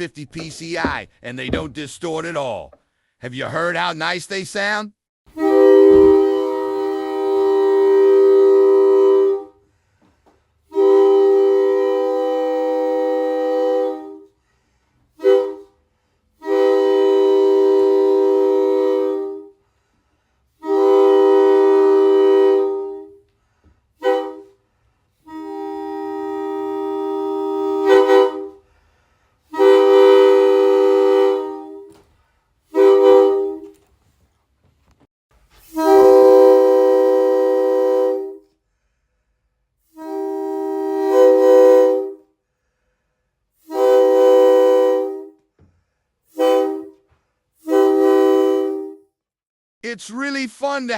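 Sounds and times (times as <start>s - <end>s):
air horn chord blasts: 5.4s - 9.5s, 10.7s - 14.2s, 16.4s - 19.4s, 20.6s - 23.1s, 24.0s - 24.5s, 25.3s - 28.6s, 29.5s - 31.9s, 35.6s - 38.4s, 40.0s - 42.2s, 43.7s - 45.3s, 46.3s - 47.0s, 47.6s - 49.0s.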